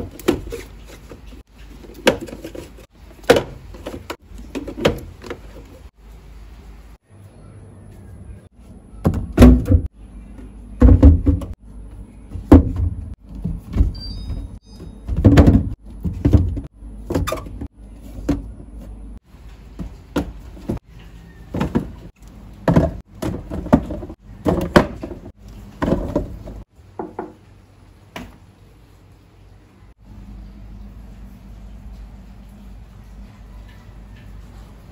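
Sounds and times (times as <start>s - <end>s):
containers knocking in a refrigerator: 10.8s - 11.6s, 12.3s - 17.3s, 21.5s - 27.4s.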